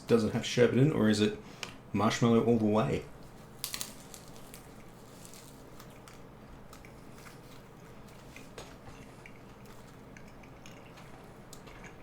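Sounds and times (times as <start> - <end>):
person chewing crunchy snack: 3.3 - 12.0.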